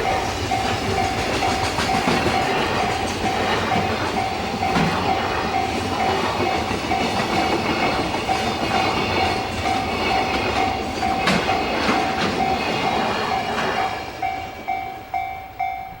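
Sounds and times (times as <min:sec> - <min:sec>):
crossing warning bell ringing: 0:00.0 - 0:16.0
train wagons rumbling and clattering: 0:00.0 - 0:16.0.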